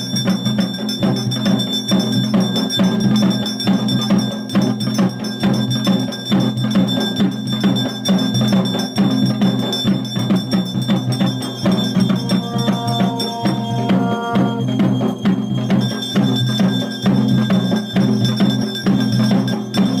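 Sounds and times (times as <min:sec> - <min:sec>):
fast drumming: 0:00.0 - 0:20.0
ringing bells and metal percussion: 0:00.0 - 0:20.0
steady high ringing tone: 0:00.0 - 0:20.0
held pitched note: 0:11.4 - 0:15.0.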